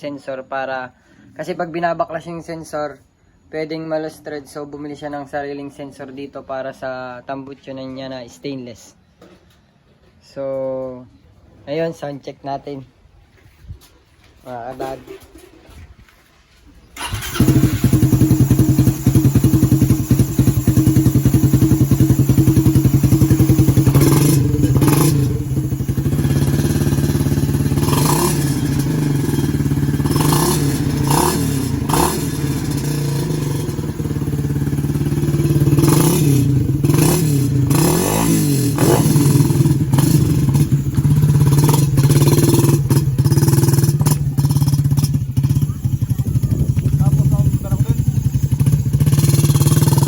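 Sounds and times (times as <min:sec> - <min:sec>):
motorcycle engine idling and revving: 0:17.0 - 0:50.0.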